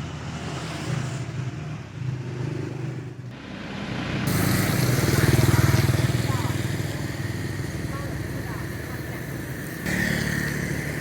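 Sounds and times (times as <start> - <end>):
motorcycle engines running: 0.0 - 11.0.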